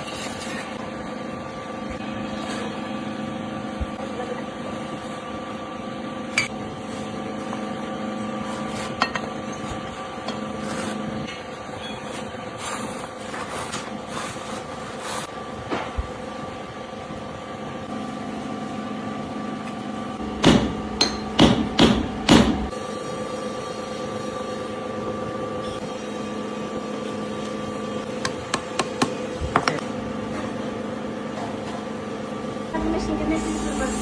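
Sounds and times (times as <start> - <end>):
machine hum: 17.9 - 22.7, 32.7 - 34.0
hammer striking metal: 20.2 - 22.7.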